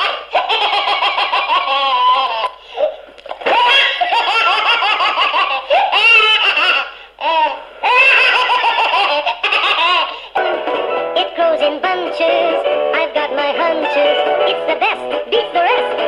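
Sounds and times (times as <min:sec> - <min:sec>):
high-pitched giggling laughter: 0:00.0 - 0:02.6, 0:03.4 - 0:10.2.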